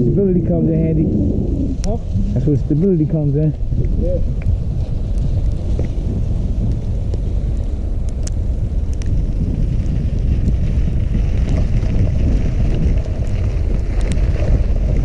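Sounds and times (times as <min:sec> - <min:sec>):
wind buffeting microphone: 0:00.0 - 0:15.0
faint ticks: 0:06.6 - 0:09.2.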